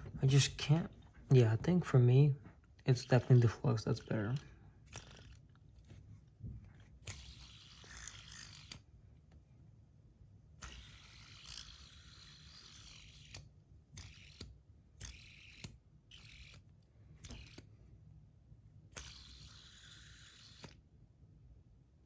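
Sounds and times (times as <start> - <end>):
fidget spinner bearing whir: 2.9 - 6.0, 6.7 - 8.9, 10.5 - 17.8, 18.9 - 20.9.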